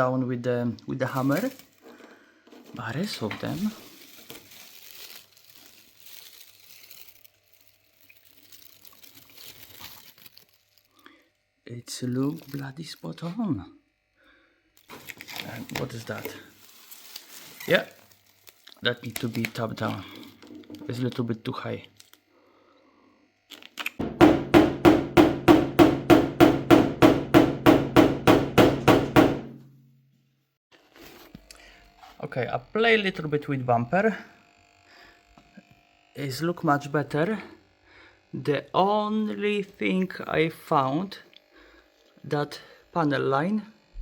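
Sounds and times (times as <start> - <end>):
vinyl film rustling: 1.0 - 10.9, 14.8 - 22.2
hammer tapping on metal bodywork: 24.0 - 29.6.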